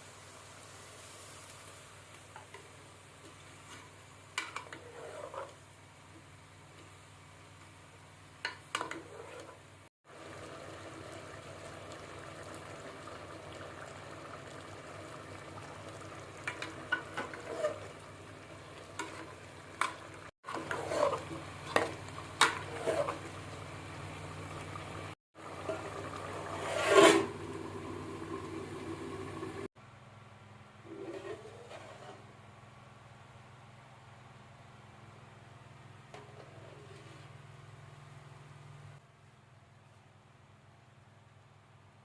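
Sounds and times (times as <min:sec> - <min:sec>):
vegetables sizzling in a pan: 0:00.0 - 0:05.7.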